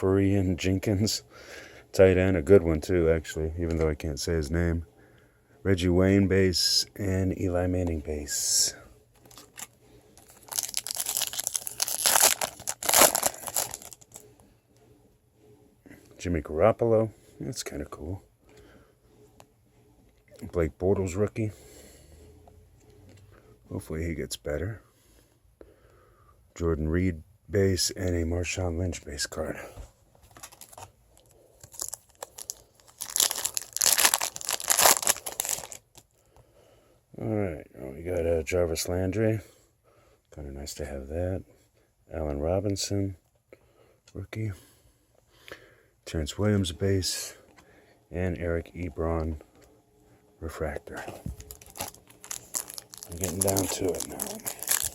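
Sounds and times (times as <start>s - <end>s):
foil wrapper crinkling and tearing: 9.3s - 14.2s, 30.4s - 36.1s, 51.3s - 54.9s.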